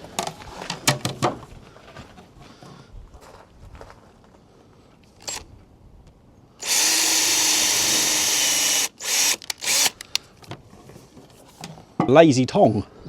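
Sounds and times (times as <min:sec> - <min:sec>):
power drill drilling: 0:06.6 - 0:10.1.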